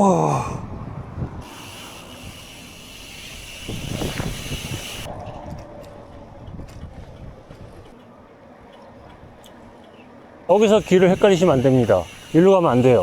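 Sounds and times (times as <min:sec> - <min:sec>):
wind buffeting microphone: 0:00.4 - 0:02.4, 0:03.3 - 0:09.9
high hiss: 0:01.4 - 0:05.1, 0:10.5 - 0:13.0
faint clicks: 0:05.8 - 0:10.4.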